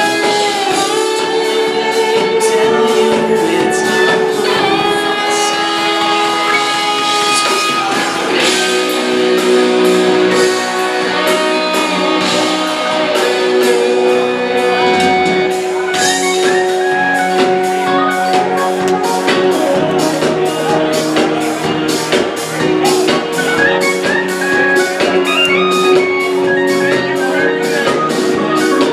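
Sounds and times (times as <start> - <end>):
drum and cymbal beat: 0.0 - 28.9
held guitar notes: 0.0 - 28.9
rock band playing: 0.0 - 28.9.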